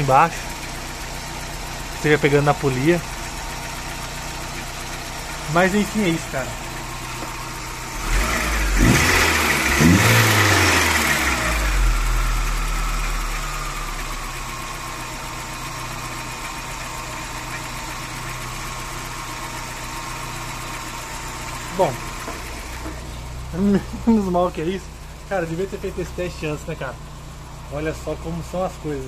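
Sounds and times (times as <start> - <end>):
pickup engine revving and idling: 0.0 - 29.0.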